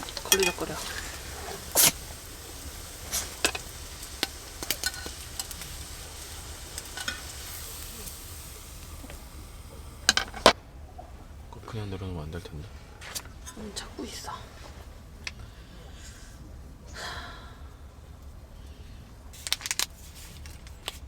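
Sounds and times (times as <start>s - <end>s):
food sizzling in a frying pan: 0.0s - 10.6s
utensil scraping a pan: 0.0s - 10.6s.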